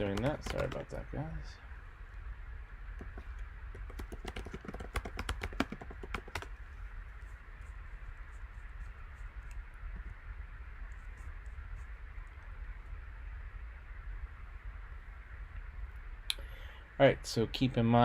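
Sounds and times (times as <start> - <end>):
typing on computer keyboard: 0.0 - 1.0, 3.0 - 6.5
steady low hum: 0.0 - 18.0.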